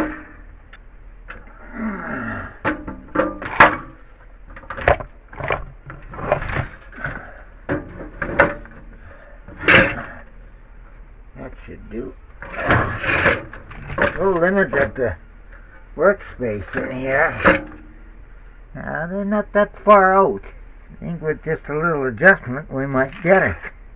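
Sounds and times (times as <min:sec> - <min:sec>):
machine knocks and clunks: 0:02.6 - 0:10.3.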